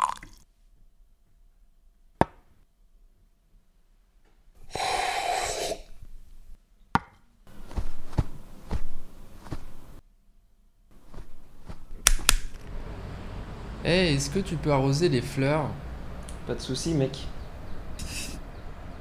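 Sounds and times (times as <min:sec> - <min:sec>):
dull thumps: 0:07.0 - 0:09.9
sharp click: 0:12.0 - 0:12.7.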